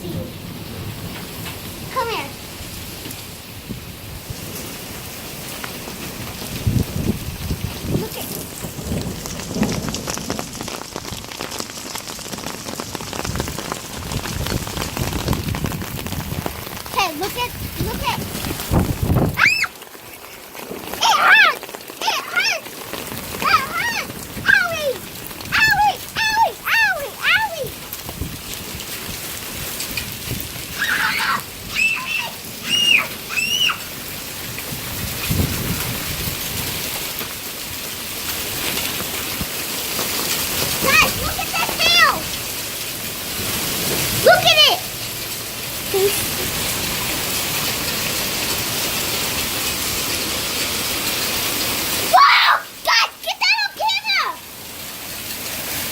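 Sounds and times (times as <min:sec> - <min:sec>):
heavy rain falling: 0:00.0 - 0:55.9
sharp raindrop hits: 0:00.0 - 0:55.9
high-pitched squealing calls: 0:30.8 - 0:33.9.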